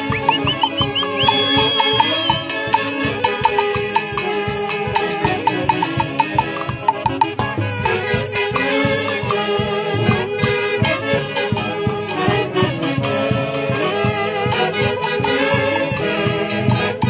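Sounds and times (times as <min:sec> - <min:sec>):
steady pulsed beat: 0:00.0 - 0:06.2
wind and string dance music: 0:00.0 - 0:17.0.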